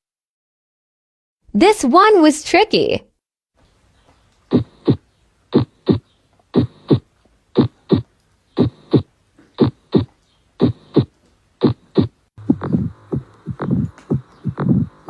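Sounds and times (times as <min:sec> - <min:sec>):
heartbeat: 0:04.5 - 0:15.0.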